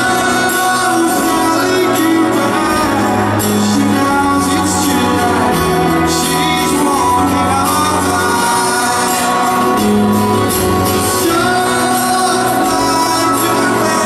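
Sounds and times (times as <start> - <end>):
person singing: 0.0 - 14.0
rock band playing: 0.0 - 14.0.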